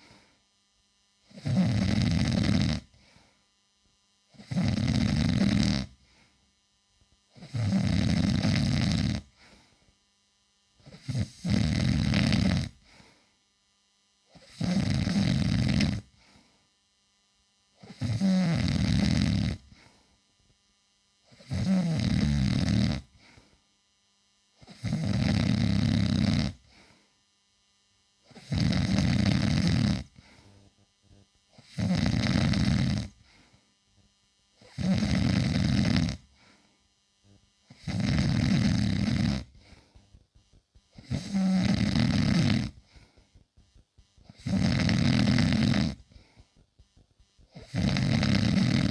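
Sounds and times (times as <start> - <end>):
man snoring loudly: 1.3 - 3.1, 4.3 - 6.0, 7.3 - 9.5, 10.8 - 13.0, 14.3 - 16.3, 17.8 - 19.9, 21.3 - 23.4, 24.6 - 26.9, 28.3 - 30.5, 31.6 - 33.4, 34.6 - 36.4, 37.6 - 39.9, 41.0 - 42.9, 44.3 - 46.2, 47.5 - 48.9.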